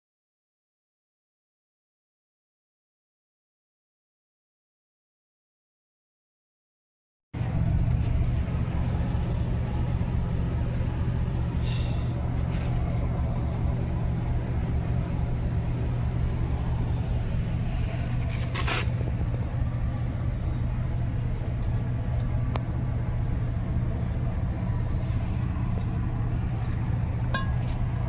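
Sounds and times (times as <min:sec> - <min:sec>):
vehicle engine running steadily: 0:07.4 - 0:28.0.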